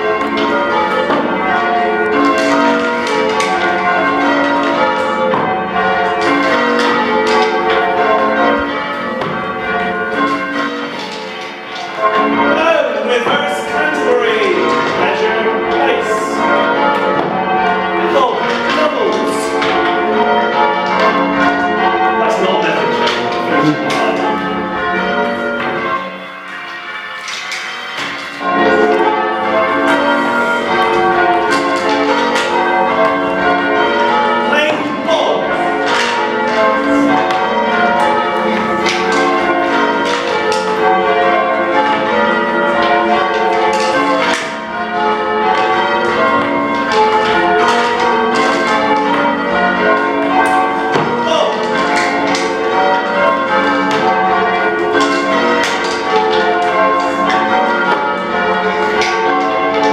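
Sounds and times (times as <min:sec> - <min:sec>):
church bells change ringing: 0:00.0 - 0:59.9.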